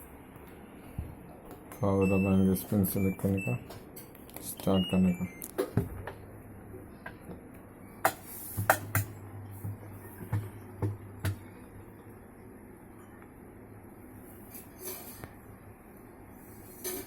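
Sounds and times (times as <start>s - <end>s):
washing machine motor hum: 4.7s - 14.5s
washing machine clicks and knocks: 8.0s - 11.5s.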